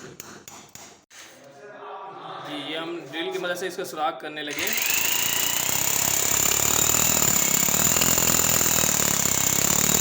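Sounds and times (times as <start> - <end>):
electric drill boring into cement: 4.5 - 10.0.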